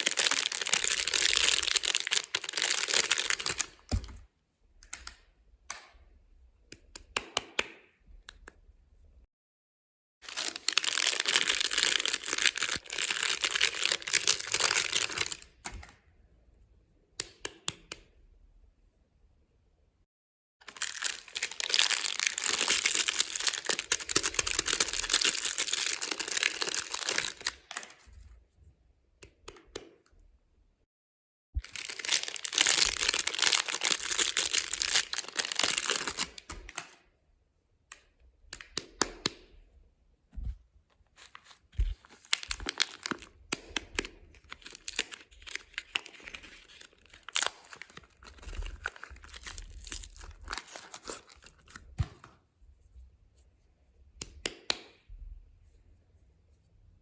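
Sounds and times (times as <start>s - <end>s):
packaging tearing and crinkling: 0.0s - 4.1s, 10.2s - 15.5s, 20.7s - 27.7s, 31.6s - 36.8s, 41.2s - 51.8s.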